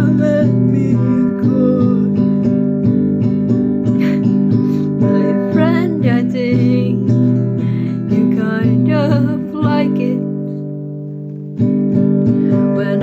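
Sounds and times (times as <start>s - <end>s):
person singing: 0.0s - 2.6s, 4.0s - 10.4s, 12.4s - 13.0s
acoustic guitar strumming: 0.0s - 13.0s.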